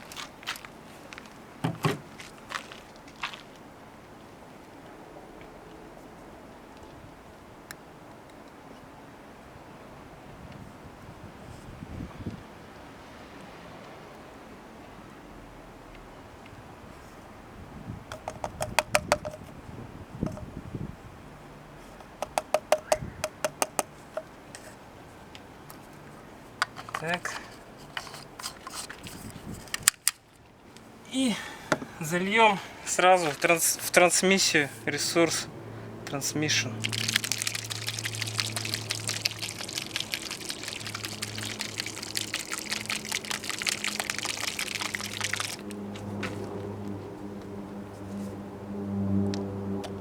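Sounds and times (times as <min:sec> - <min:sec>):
sharp hollow taps ringing: 0:18.1 - 0:19.4, 0:22.0 - 0:24.3
liquid gurgling from bottle: 0:36.8 - 0:45.8.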